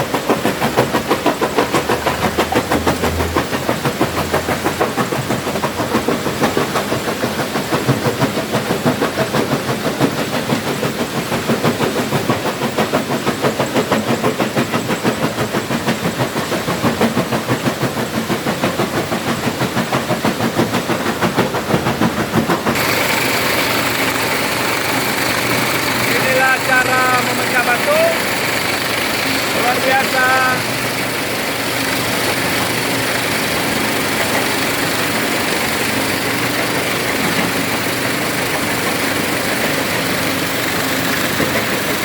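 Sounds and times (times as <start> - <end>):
stone crusher machine crushing rock: 22.8 - 42.0.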